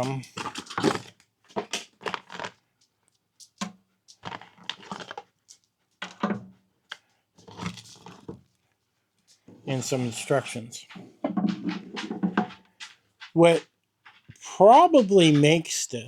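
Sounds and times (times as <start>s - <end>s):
packaging rustling and crinkling: 0.0s - 2.6s, 3.5s - 5.3s, 7.4s - 8.5s.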